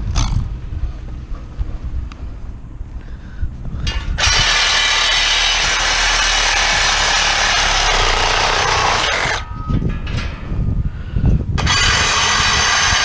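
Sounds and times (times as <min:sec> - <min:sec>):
power tool cutting steel: 0:04.2 - 0:09.4, 0:11.6 - 0:13.0.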